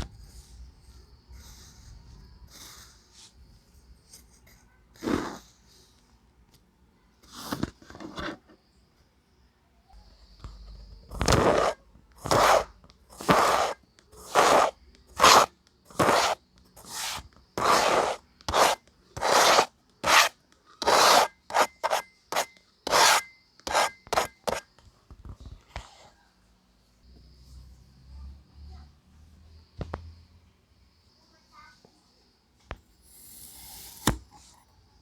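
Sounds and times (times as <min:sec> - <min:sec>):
sand rasping under strokes: 0:11.3 - 0:24.6.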